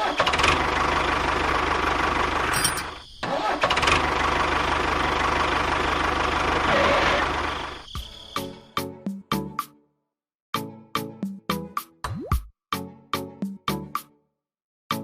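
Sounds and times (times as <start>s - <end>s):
small engine running: 0.0s - 7.9s.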